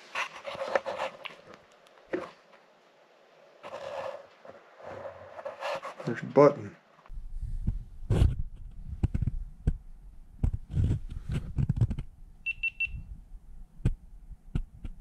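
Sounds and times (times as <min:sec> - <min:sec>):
high electronic beeps: 0:12.5 - 0:13.0.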